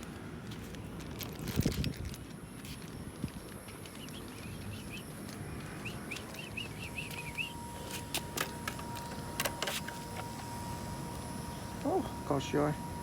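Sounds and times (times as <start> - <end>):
low outdoor rumble: 0.0 - 13.0
faint steady high tone: 2.8 - 13.0
bird chirping: 3.9 - 8.0.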